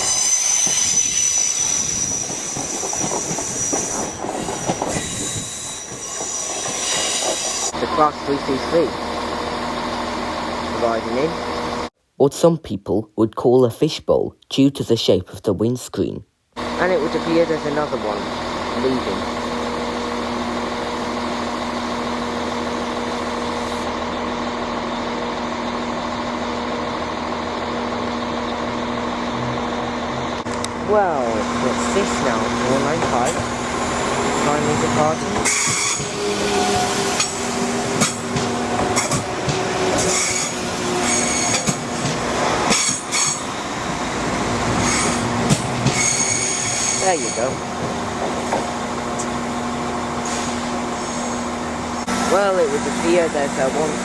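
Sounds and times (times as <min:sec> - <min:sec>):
train wheels squealing: 0:00.0 - 0:07.7, 0:34.2 - 0:41.8, 0:42.7 - 0:43.7, 0:44.8 - 0:47.6
train rumble and clatter: 0:00.0 - 0:11.9, 0:16.6 - 0:54.0.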